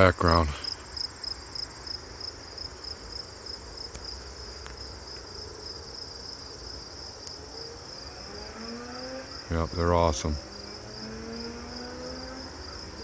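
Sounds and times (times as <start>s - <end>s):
crickets chirping: 0.0s - 13.0s.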